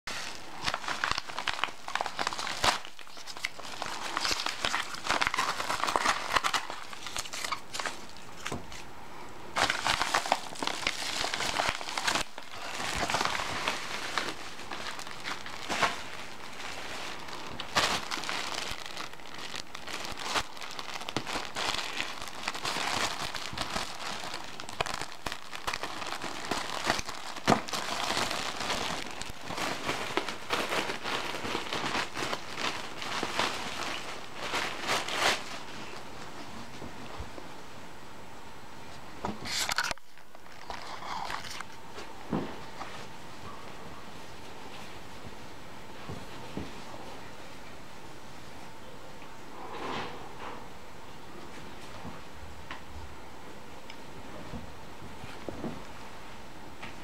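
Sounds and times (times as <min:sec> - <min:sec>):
packaging crinkling and rustling: 0:00.1 - 0:08.9, 0:09.5 - 0:37.0, 0:39.2 - 0:43.2.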